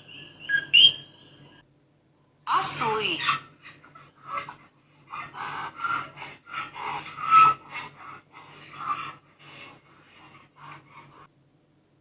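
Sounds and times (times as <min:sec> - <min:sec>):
donkeys braying: 0:03.2 - 0:11.3.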